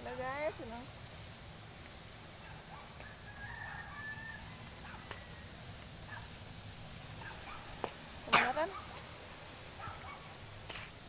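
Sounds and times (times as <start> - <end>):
rooster crowing: 2.8 - 6.2.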